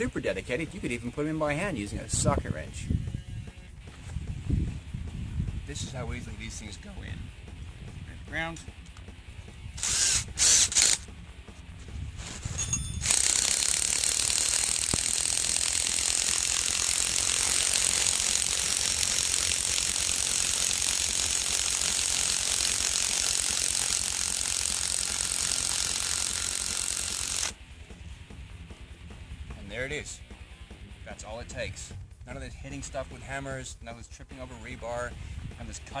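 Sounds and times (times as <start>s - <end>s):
impact gun hammering rattle: 9.8s - 11.1s, 12.2s - 27.6s.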